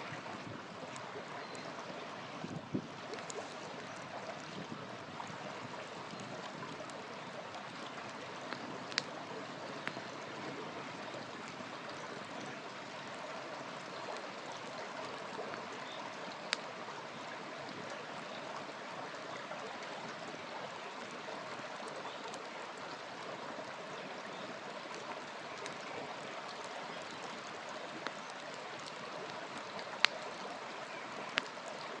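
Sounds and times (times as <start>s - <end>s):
campfire hissing: 5.1s - 17.9s, 20.7s - 32.0s
burning wood popping: 5.7s - 10.1s.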